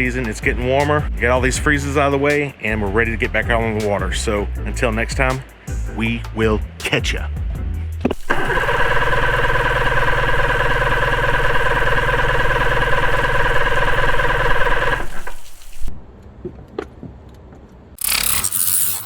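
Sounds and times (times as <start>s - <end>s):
engine idling: 8.2s - 15.9s.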